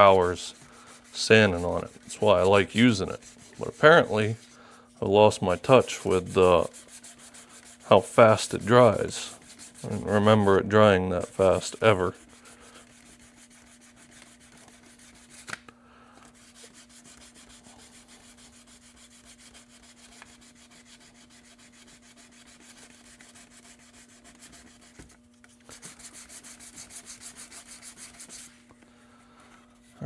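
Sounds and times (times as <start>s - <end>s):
sandpaper scratching plastic: 0.0s - 15.6s, 16.3s - 28.7s.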